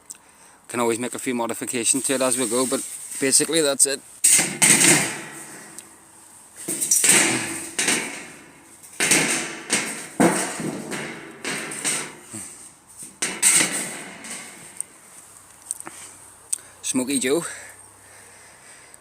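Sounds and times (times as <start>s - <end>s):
firewood knocking and clattering: 4.2s - 6.0s, 6.6s - 15.0s.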